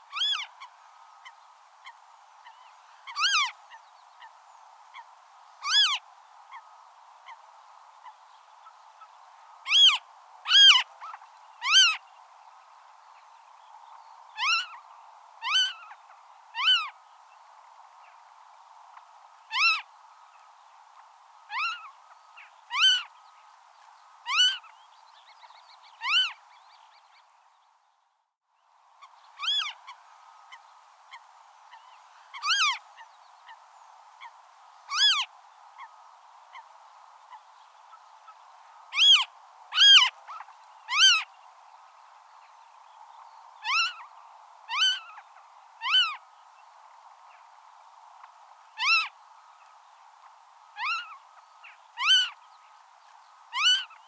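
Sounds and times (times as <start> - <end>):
steady background hiss: 0.0 - 28.0, 28.7 - 54.0
bird calling: 53.6 - 54.0.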